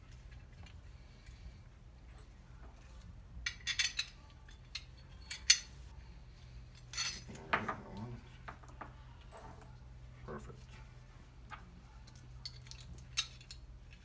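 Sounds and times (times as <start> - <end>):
metal hardware clinking: 3.4 - 5.7, 6.8 - 7.8.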